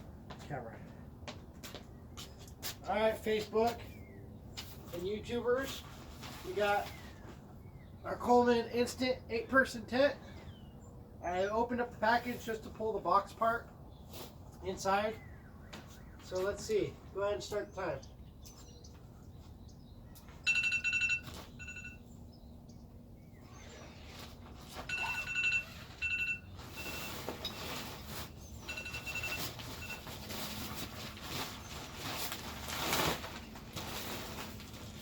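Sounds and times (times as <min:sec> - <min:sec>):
rough rustling and handling noise: 0:02.3 - 0:07.5, 0:23.9 - 0:35.0.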